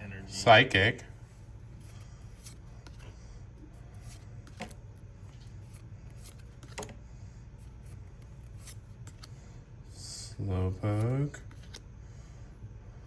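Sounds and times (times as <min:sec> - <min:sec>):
trading cards rustling and clicking: 0:01.8 - 0:07.0, 0:07.6 - 0:09.4, 0:10.8 - 0:11.9.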